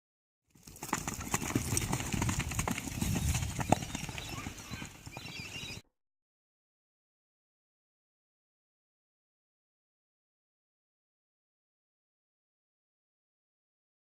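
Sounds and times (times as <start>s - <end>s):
horse hooves clopping: 0.5s - 5.8s.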